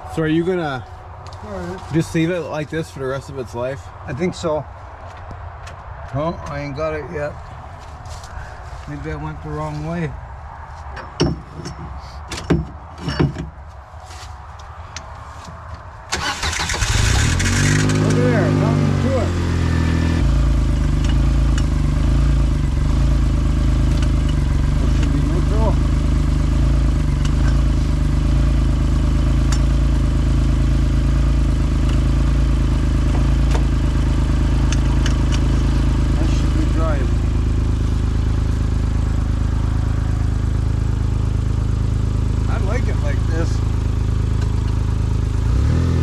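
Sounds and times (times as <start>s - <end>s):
tractor engine idling: 16.1s - 45.5s.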